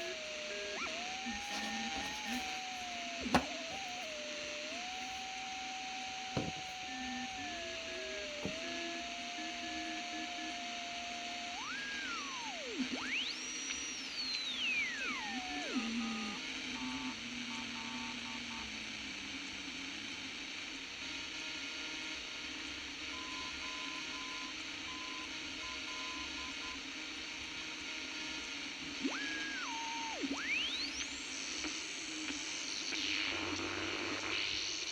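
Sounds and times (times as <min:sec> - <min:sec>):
radio static hiss: 0:00.0 - 0:22.1.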